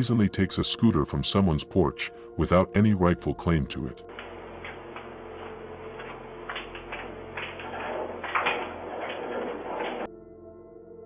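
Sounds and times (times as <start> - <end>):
steady hiss and hum: 4.1 - 10.1.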